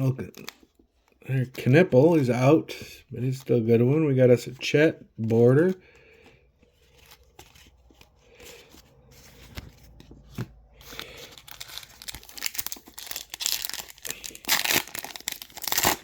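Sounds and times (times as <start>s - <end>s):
wrapper crinkling and tearing: 10.8s - 16.0s.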